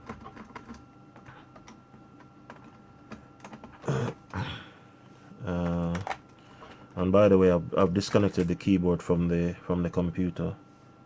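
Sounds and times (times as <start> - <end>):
keyboard keys and casing clicks: 0.0 - 3.8, 5.6 - 6.4.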